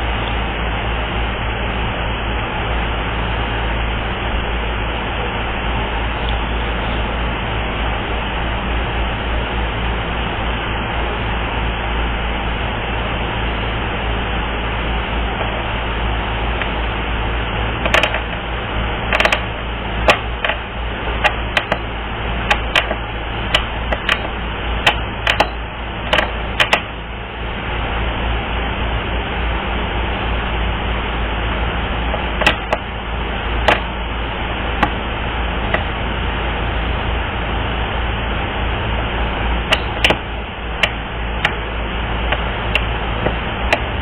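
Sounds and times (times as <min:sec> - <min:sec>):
sharp clicks and taps: 0:17.8 - 0:18.4, 0:19.1 - 0:19.5, 0:20.1 - 0:20.6, 0:21.2 - 0:21.9, 0:22.5 - 0:26.9, 0:32.1 - 0:32.9, 0:33.7 - 0:33.9, 0:39.7 - 0:40.2, 0:40.8 - 0:41.6.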